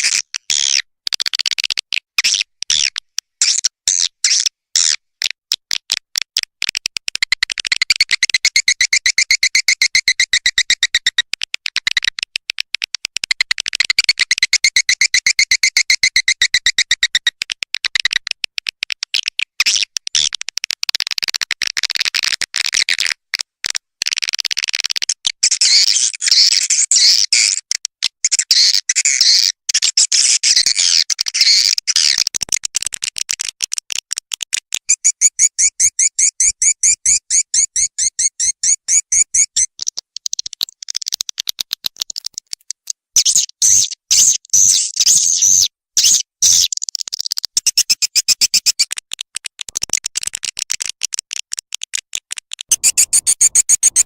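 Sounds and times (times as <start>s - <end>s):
swiftlets chirping and twittering: 43.2s - 48.9s, 52.7s - 54.0s.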